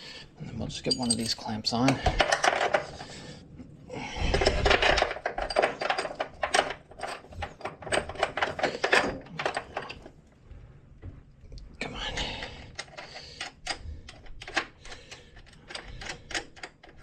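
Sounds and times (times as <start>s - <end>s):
metal hose clamp clinking: 0.8s - 2.8s.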